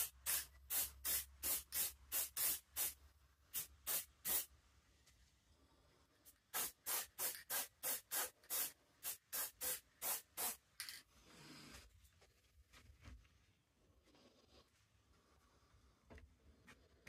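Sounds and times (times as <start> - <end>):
spray can hiss: 0.0 - 4.5, 6.5 - 10.6
spray can puffs: 0.0 - 4.5, 6.5 - 10.9.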